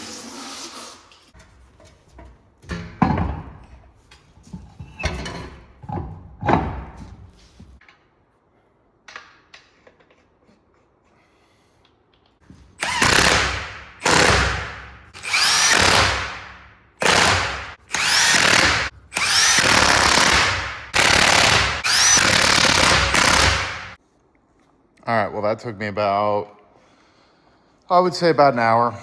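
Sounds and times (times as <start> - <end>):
impact wrench whine and hammering: 12.8 - 24.0.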